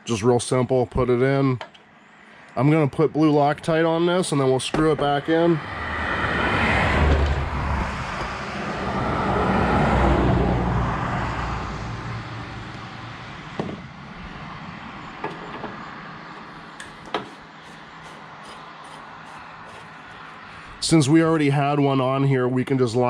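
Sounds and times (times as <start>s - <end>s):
passing vehicle road noise: 3.7s - 21.7s.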